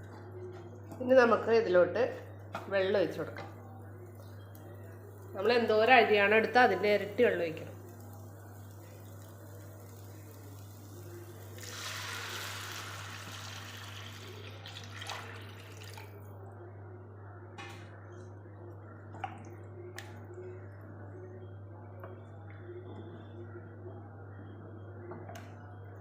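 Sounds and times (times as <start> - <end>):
water pouring into a pan: 7.0 - 16.2.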